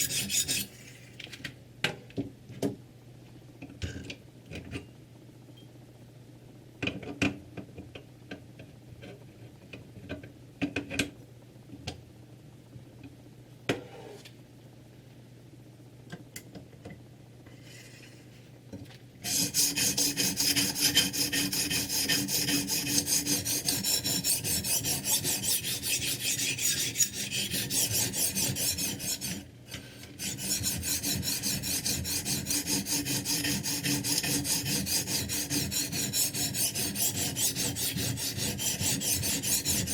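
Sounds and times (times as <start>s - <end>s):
sharpening stone rasping on knife: 0.0s - 0.7s, 19.2s - 29.4s, 30.2s - 39.9s.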